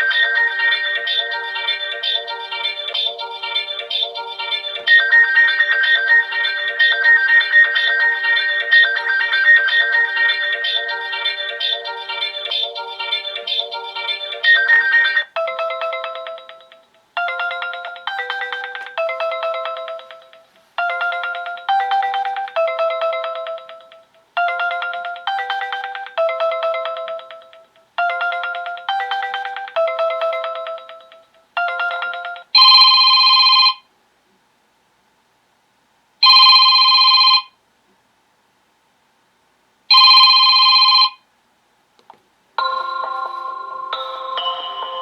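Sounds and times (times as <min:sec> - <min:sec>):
phone ringtone chiming melody: 0:00.0 - 0:33.8, 0:36.2 - 0:37.5, 0:39.9 - 0:41.2, 0:42.6 - 0:45.0
electronic telephone ring: 0:28.2 - 0:33.8, 0:36.2 - 0:37.6, 0:39.9 - 0:41.2, 0:42.6 - 0:45.0.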